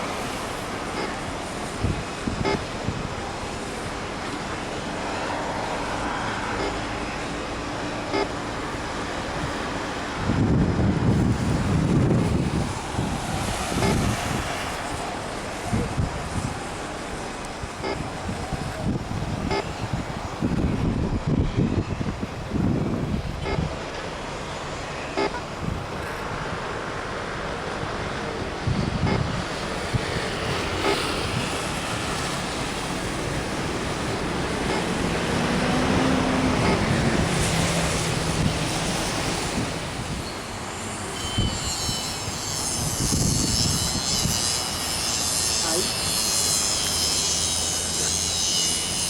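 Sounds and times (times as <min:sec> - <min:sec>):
jet plane passing: 0:21.7 - 0:41.0.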